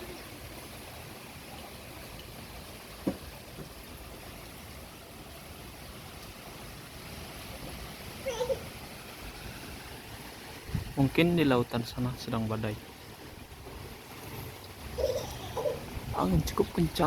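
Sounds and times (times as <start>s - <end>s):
strong wind blowing: 10.6s - 11.0s, 15.8s - 16.6s.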